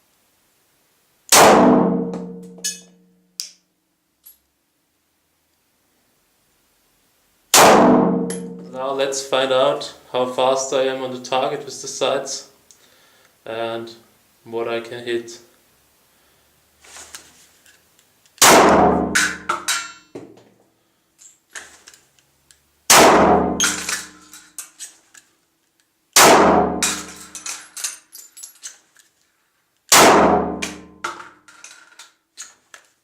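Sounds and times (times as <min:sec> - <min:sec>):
pistol shots with ringing tail: 0:01.3 - 0:02.4, 0:07.6 - 0:08.6, 0:18.4 - 0:19.5, 0:22.9 - 0:24.1, 0:26.2 - 0:27.3, 0:29.9 - 0:30.9
small metallic clinks: 0:02.5 - 0:03.5, 0:04.2 - 0:04.5, 0:26.9 - 0:29.1.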